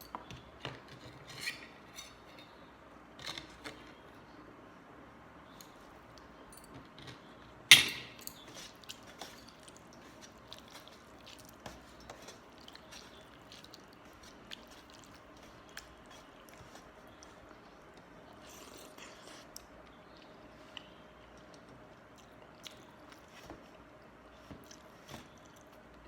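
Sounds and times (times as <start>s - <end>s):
wet squishing and chewing: 8.4s - 26.0s.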